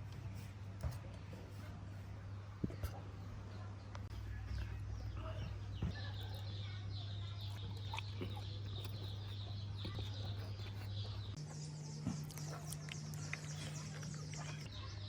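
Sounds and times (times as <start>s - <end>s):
birds calling: 3.9s - 15.0s.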